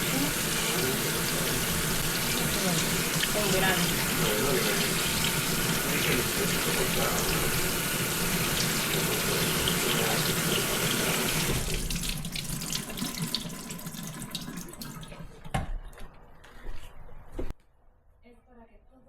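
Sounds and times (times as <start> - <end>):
tap water running into sink: 0.0 - 15.9.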